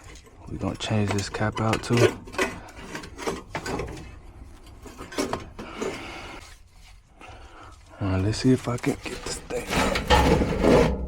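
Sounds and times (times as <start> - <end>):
knocks clicks and rubbing of tools: 0.0 - 6.1.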